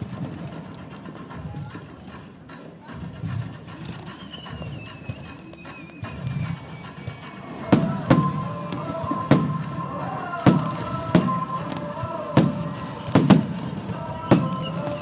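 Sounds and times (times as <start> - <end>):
fireworks shells banging: 7.6 - 15.0.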